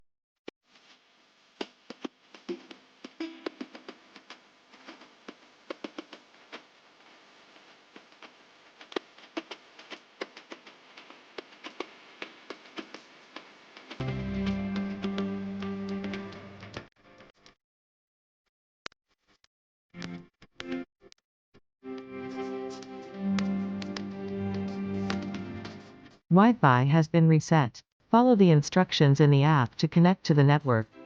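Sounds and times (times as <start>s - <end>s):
guitar music: 14.0s - 16.8s.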